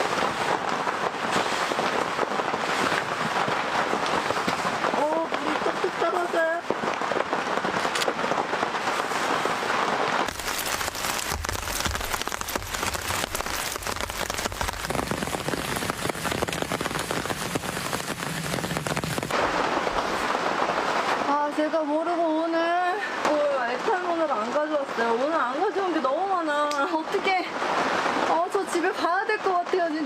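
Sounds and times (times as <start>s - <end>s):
sharp raindrop hits: 0.0s - 29.9s
heavy rain: 0.0s - 30.0s.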